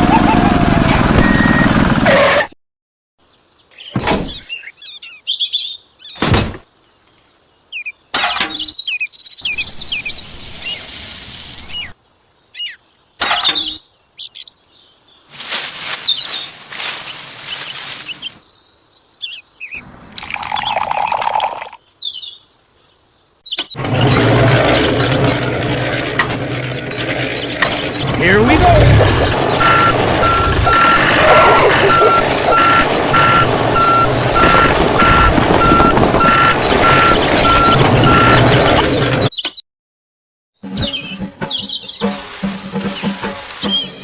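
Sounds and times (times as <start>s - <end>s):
birds chirping: 3.3s - 39.6s, 40.6s - 44.0s
hiss: 9.6s - 11.9s.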